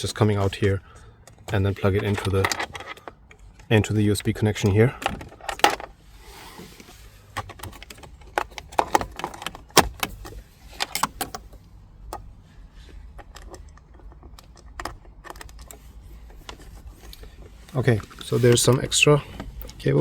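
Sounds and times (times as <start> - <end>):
cable clicking against plastic: 0.0 - 5.8, 7.4 - 12.3, 13.0 - 19.8.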